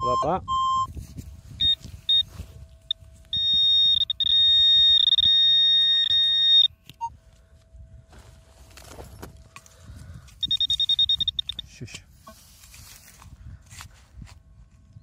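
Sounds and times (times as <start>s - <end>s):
metal detector beeping tone: 0.0s - 7.2s, 10.3s - 12.5s
scuffling and rustling: 8.1s - 10.0s, 12.2s - 14.8s.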